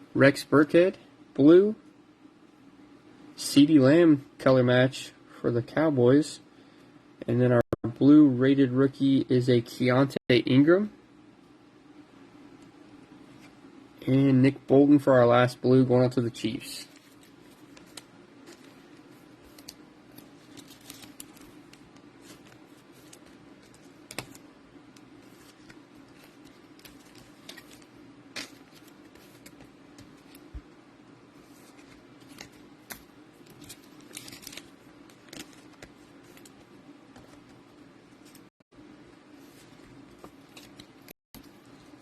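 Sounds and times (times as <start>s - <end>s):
steady low hum: 0.0s - 42.0s
trading cards clicking and rustling: 16.8s - 30.7s, 31.5s - 37.6s.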